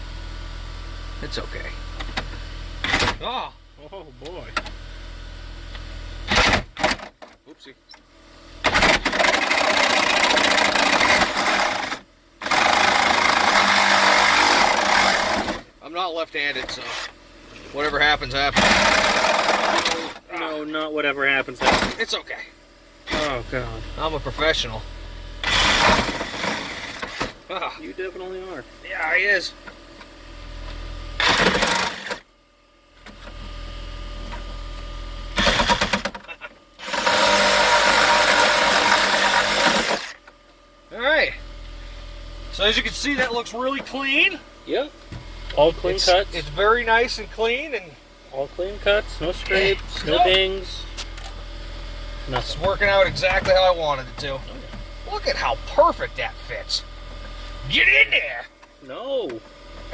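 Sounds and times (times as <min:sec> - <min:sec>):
reciprocating saw cutting plastic: 0:08.9 - 0:15.6, 0:18.6 - 0:20.2, 0:36.8 - 0:40.2.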